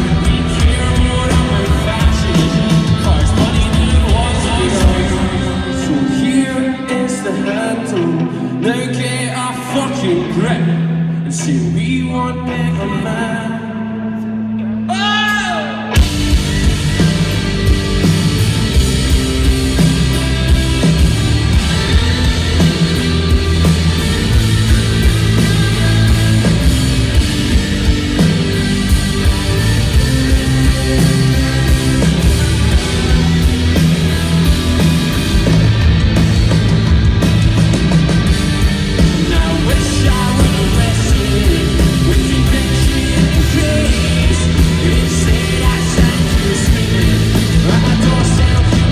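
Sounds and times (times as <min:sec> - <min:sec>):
rock band with distorted guitars: 0:00.0 - 0:48.9.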